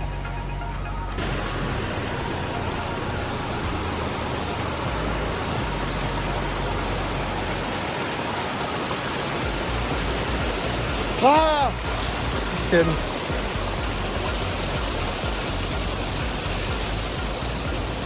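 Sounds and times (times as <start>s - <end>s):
low rumble: 0.0s - 7.8s
waterfall rushing: 1.2s - 18.0s.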